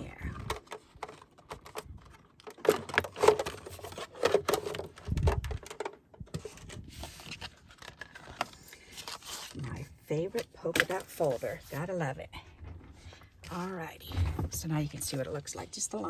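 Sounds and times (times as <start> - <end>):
plastic folder crinkling and clicking: 0.2 - 11.9.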